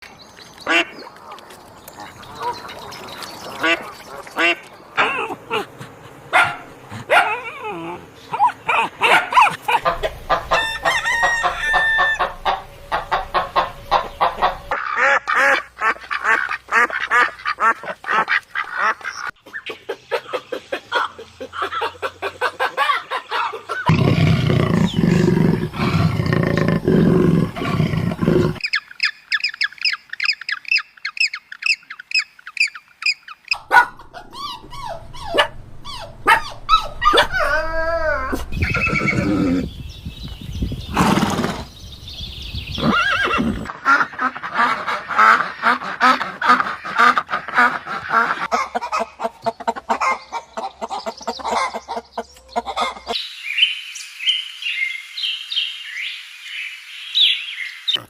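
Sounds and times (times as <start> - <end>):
poultry calling: 8.3 - 19.3, 33.5 - 39.7
loud low rumble: 33.6 - 38.8.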